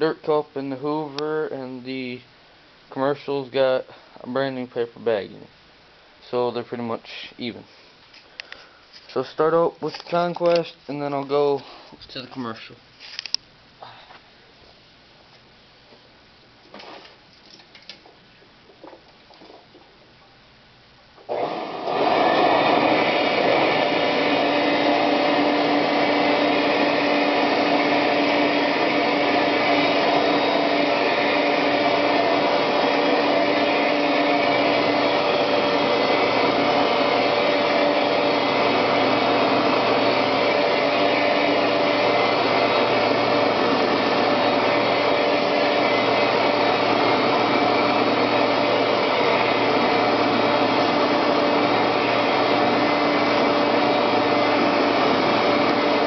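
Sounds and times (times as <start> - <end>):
vacuum cleaner running: 21.2 - 56.0.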